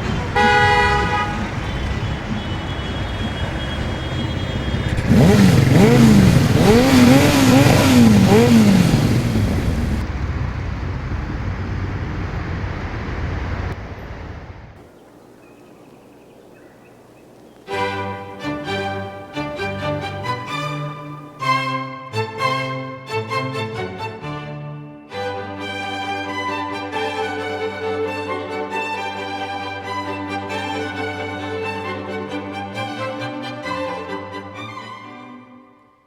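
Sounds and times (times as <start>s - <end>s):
city street traffic: 0.0s - 22.7s.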